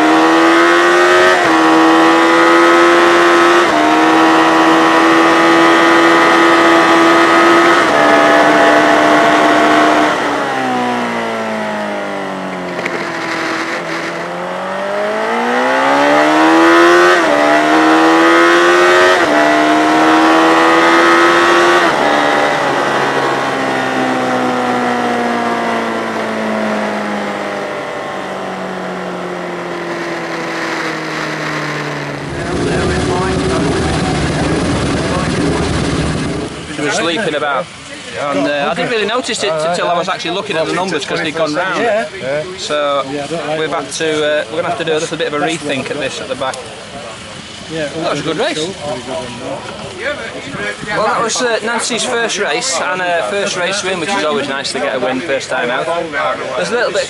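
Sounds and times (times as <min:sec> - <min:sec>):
motorcycle engine revving and shifting: 0:00.0 - 0:37.2.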